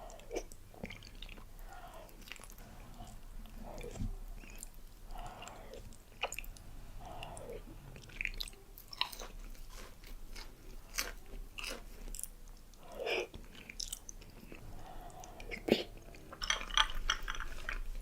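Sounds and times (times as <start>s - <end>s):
person chewing food: 0.0s - 18.0s.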